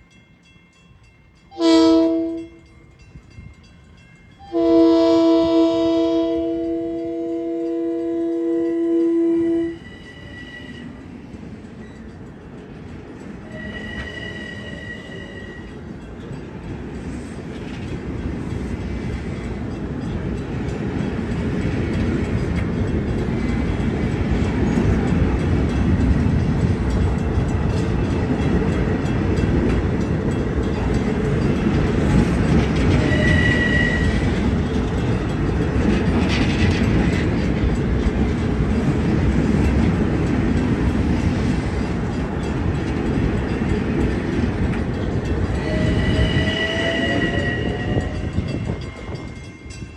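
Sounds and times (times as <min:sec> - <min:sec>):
train rumbling past: 0:00.0 - 0:49.9
train horn chord: 0:01.5 - 0:02.7, 0:04.4 - 0:11.0, 0:32.8 - 0:34.4, 0:45.6 - 0:48.8.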